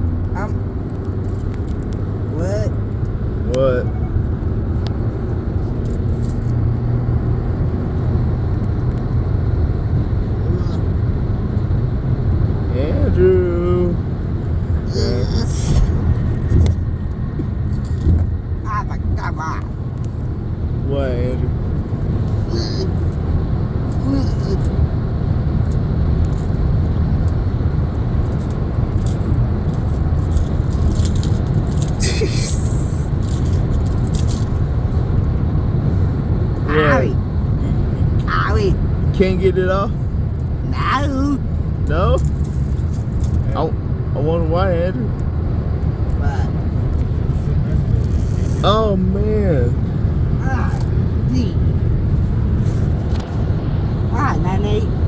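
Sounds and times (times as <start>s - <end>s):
car cabin rumble: 0.0s - 55.0s
metallic jingling and clicks: 16.2s - 18.3s, 28.2s - 34.7s, 42.1s - 43.6s.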